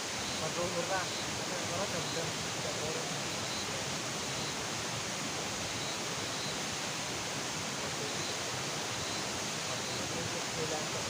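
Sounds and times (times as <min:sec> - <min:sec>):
steady outdoor hiss: 0:00.0 - 0:11.0
faint high chirps: 0:08.0 - 0:08.4, 0:09.0 - 0:10.3.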